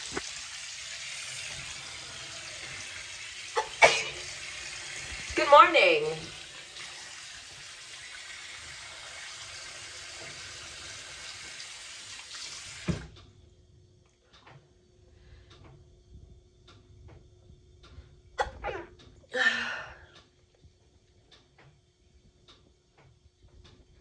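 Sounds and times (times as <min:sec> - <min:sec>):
tap water running into sink: 0:00.0 - 0:13.2
tap shutting off with knock: 0:12.7 - 0:13.2.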